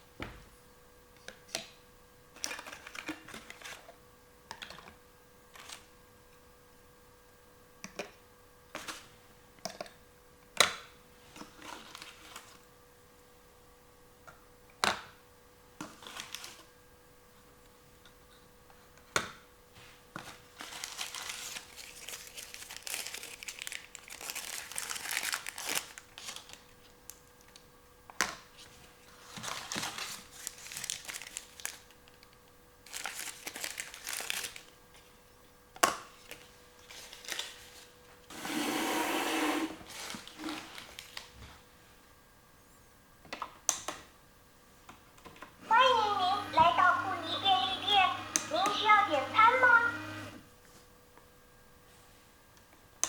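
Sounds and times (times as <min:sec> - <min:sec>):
plastic packaging crinkling: 0:16.0 - 0:16.7, 0:20.3 - 0:27.6, 0:29.0 - 0:35.1, 0:36.1 - 0:38.0, 0:39.8 - 0:41.4.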